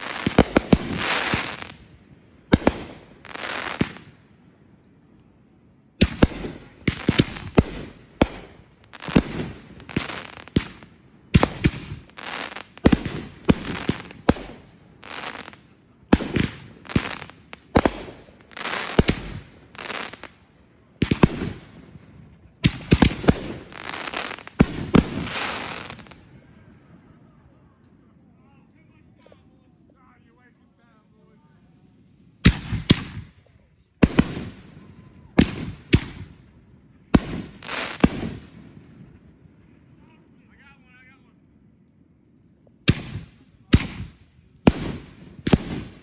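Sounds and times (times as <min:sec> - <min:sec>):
fireworks bangs with crackling: 0:00.0 - 0:04.2, 0:06.0 - 0:26.4, 0:32.4 - 0:39.7, 0:42.8 - 0:46.0.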